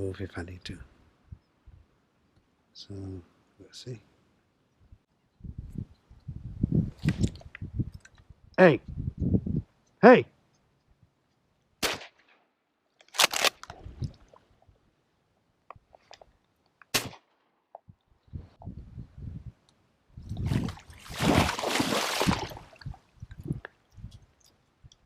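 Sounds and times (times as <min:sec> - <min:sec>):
shotgun shots: 0:11.8 - 0:12.4, 0:16.9 - 0:17.4.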